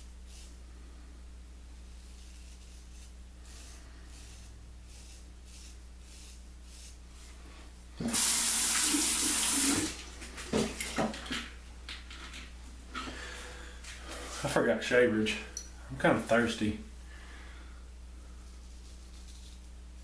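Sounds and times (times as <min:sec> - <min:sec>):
sink tap running: 0:08.0 - 0:11.4.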